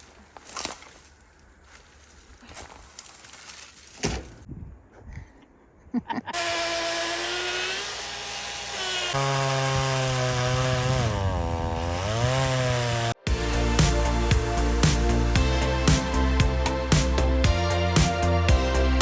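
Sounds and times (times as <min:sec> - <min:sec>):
chainsaw engine running: 0:06.4 - 0:17.2
music: 0:13.2 - 0:19.0.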